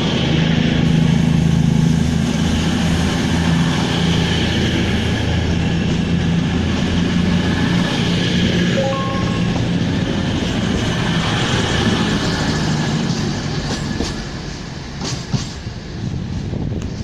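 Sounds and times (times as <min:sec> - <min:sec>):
train rumbling: 0:00.0 - 0:17.0
wheels clicking over rail joints: 0:09.6 - 0:15.8.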